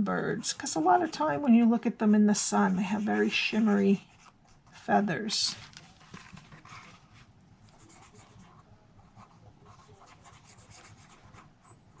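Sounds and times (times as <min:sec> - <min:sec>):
brush pen scratching on card: 0:06.0 - 0:12.0.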